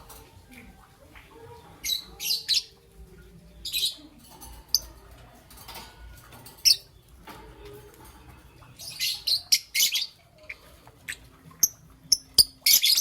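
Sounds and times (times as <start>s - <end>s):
lovebird chirping: 6.6s - 13.0s.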